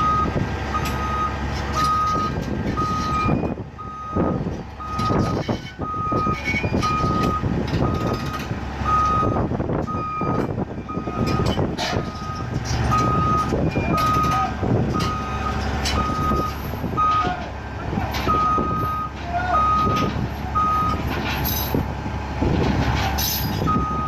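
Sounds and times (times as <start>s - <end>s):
diesel engine running: 0.0s - 24.0s
backup alarm beeping: 8.9s - 17.3s, 18.3s - 21.0s
metallic clanks: 11.2s - 21.9s.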